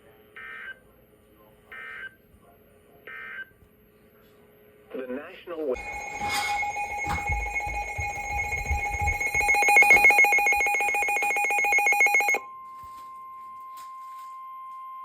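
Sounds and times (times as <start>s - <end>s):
steady alarm tone: 5.8s - 12.4s
two-tone alarm beep: 5.8s - 12.4s.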